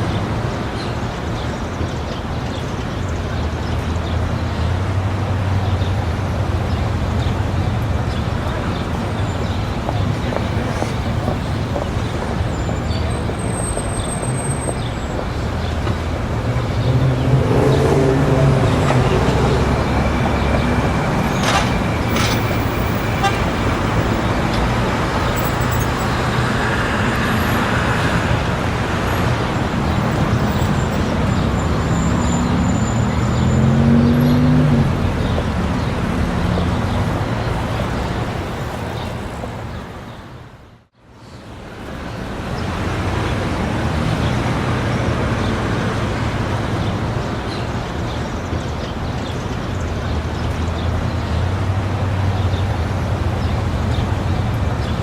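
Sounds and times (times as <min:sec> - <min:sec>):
roar of passing cars: 0:14.8 - 0:38.8.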